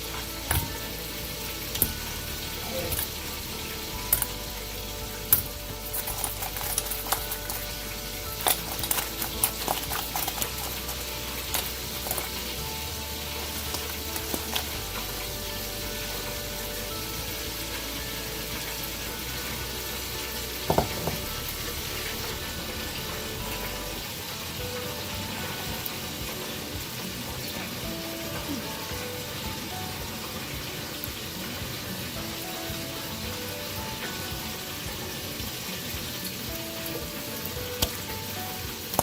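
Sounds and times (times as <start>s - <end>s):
chicken wings tossed in bowl: 8.4s - 12.5s.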